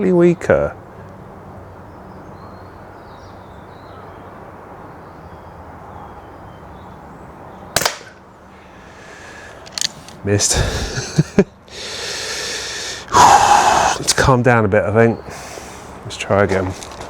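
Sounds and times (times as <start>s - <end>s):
air pistol shot: 7.8s - 8.2s.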